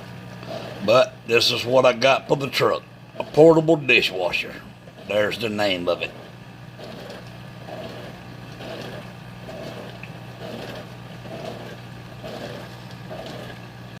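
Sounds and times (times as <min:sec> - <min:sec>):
dishwasher motor hum: 0:00.0 - 0:14.0
water swishing inside: 0:04.2 - 0:14.0.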